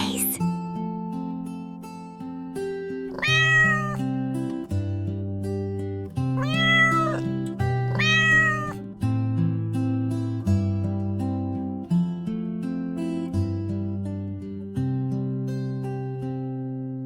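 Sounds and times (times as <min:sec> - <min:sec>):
cat meowing: 0:03.1 - 0:04.1, 0:06.4 - 0:08.8.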